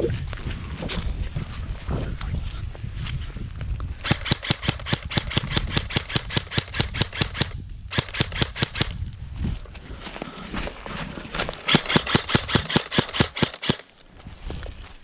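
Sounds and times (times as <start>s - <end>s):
airsoft gun shots: 4.0s - 9.0s, 11.6s - 13.9s.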